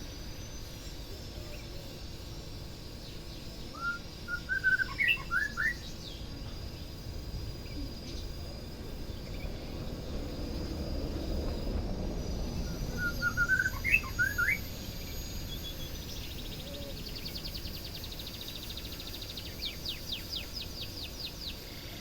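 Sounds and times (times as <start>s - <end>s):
bird singing whistled notes: 0.0s - 22.0s
low background rumble: 5.7s - 21.6s.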